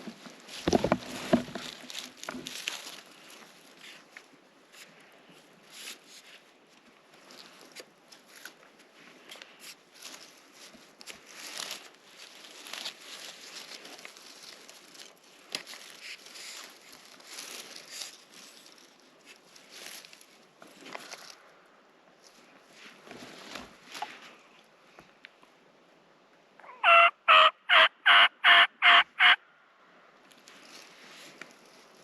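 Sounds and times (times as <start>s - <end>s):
footsteps crunching through dry leaves: 0.0s - 4.2s, 7.2s - 21.5s
twigs crackling: 0.0s - 5.1s, 7.1s - 21.5s.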